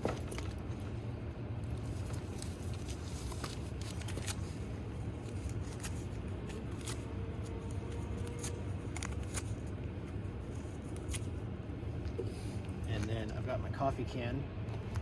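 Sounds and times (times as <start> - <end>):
microwave oven humming: 0.0 - 15.0
newspaper rustling: 1.6 - 9.8.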